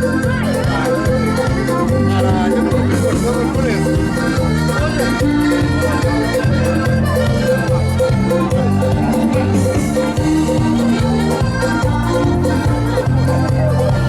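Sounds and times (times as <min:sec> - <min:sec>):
accordion folk dance music: 0:00.0 - 0:14.0.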